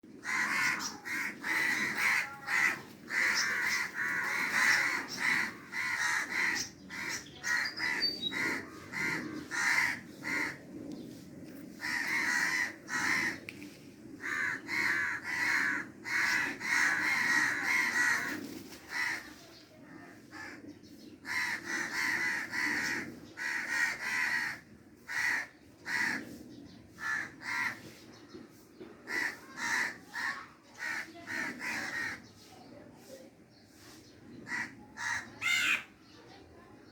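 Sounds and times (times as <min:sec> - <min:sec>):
crows cawing: 0:00.2 - 0:10.7, 0:11.8 - 0:13.5, 0:14.2 - 0:19.4, 0:20.1 - 0:20.6, 0:21.2 - 0:27.9, 0:29.0 - 0:32.3, 0:34.4 - 0:35.9.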